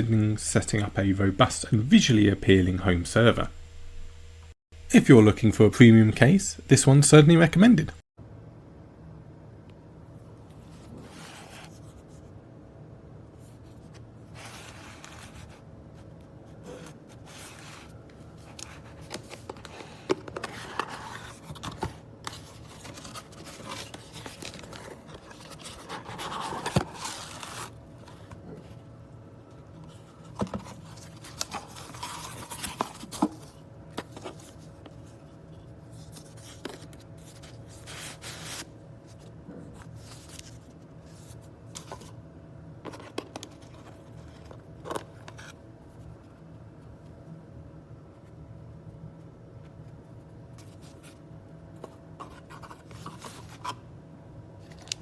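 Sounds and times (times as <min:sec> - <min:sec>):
steady low hum: 0:00.0 - 0:10.6.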